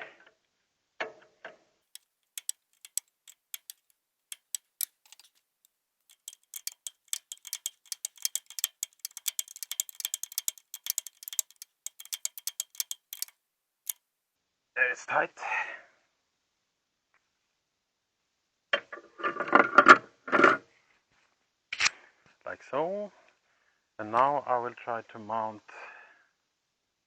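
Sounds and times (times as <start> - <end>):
ratchet wrench clicking: 2.0 - 5.3, 6.1 - 13.3.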